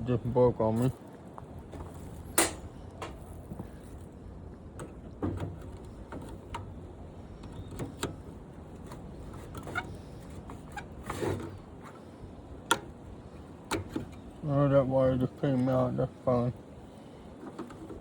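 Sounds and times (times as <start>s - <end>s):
low steady hum: 0.0s - 18.0s
clicks and knocks of tools: 1.8s - 3.6s.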